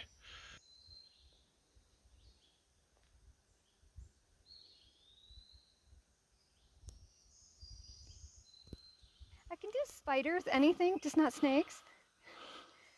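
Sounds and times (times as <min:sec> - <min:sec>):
faint high bird calls: 0:00.0 - 0:01.5.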